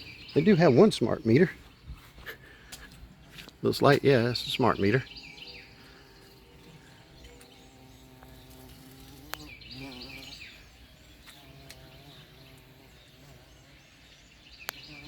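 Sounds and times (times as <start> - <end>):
bird chirps: 0.0 - 15.0
flying insect buzzing: 3.9 - 15.0.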